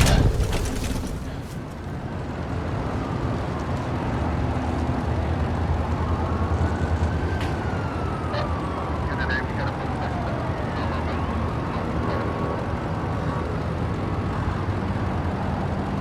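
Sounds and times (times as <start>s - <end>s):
vehicle low rumble: 0.0s - 2.3s.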